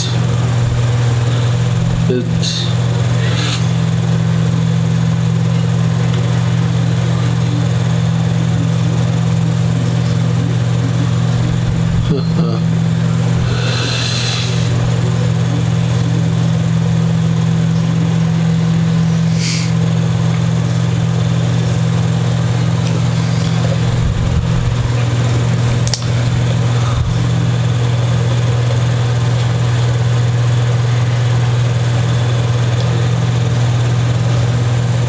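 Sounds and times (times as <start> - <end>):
low electrical hum: 0.0 - 35.0
short scraping hiss: 13.5 - 14.7, 19.2 - 19.8.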